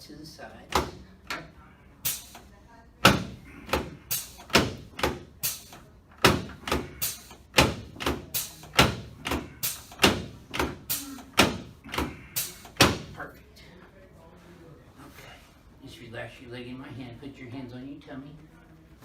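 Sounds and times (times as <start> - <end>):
sharp knocks: 6.2 - 12.2.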